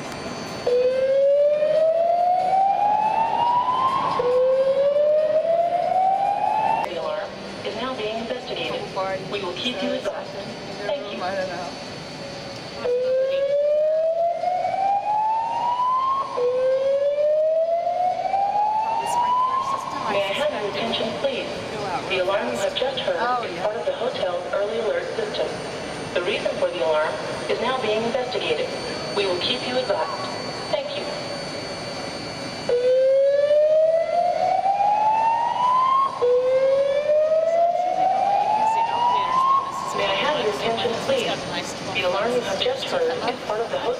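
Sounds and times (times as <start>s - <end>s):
fire alarm rising whoop: 0.2s - 6.9s, 12.8s - 20.5s, 28.0s - 40.1s.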